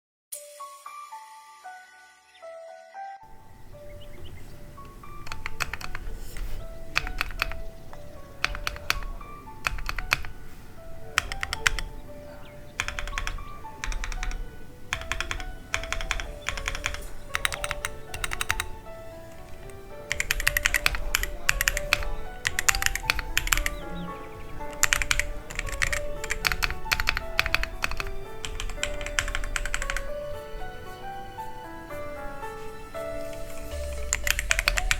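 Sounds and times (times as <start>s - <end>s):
background music: 0.3s - 34.9s
mechanical keyboard typing: 4.8s - 31.0s, 32.4s - 34.9s.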